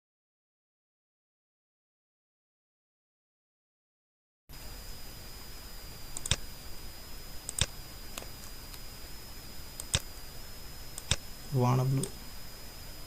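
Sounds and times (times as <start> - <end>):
faint high-pitched whine: 4.5 - 13.0
mouse buttons clicking: 6.2 - 6.4, 7.5 - 8.3, 9.8 - 10.1, 11.0 - 11.2.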